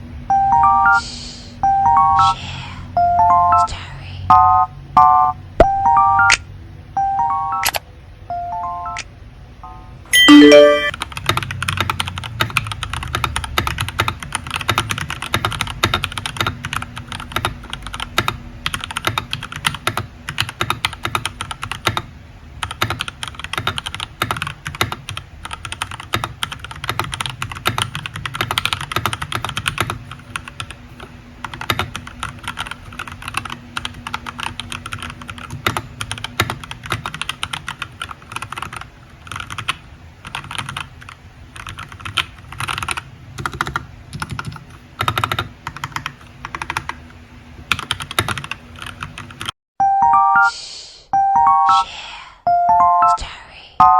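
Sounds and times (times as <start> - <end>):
brief chime: 9.7 - 10.9
fast mechanical keyboard typing: 10.2 - 49.6.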